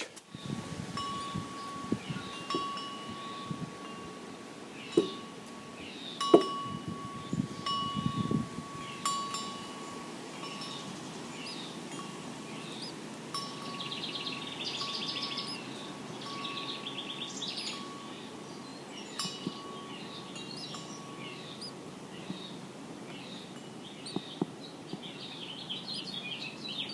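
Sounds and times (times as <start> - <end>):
small birds chirping: 0.1 - 26.9
wind chime ringing: 0.9 - 21.8.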